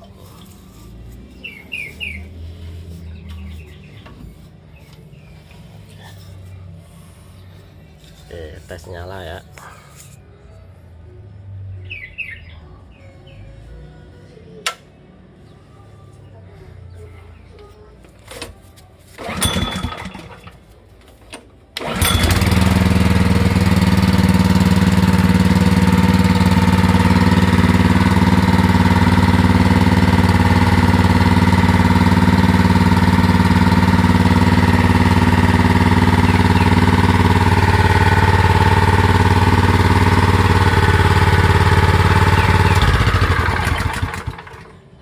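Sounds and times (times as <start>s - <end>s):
water pump engine starting: 19.2s - 20.6s, 21.8s - 44.8s
small engine running steadily: 19.2s - 20.7s, 21.8s - 45.0s.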